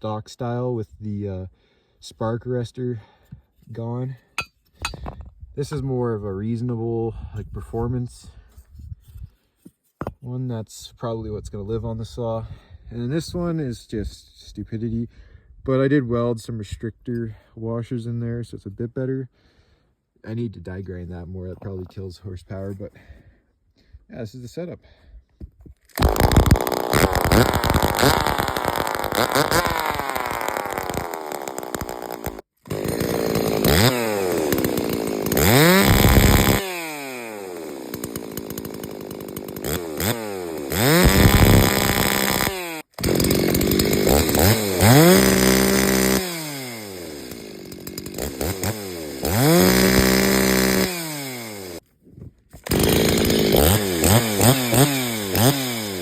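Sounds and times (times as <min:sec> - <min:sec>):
chainsaw revving: 0:25.9 - 0:51.8, 0:52.6 - 0:56.0.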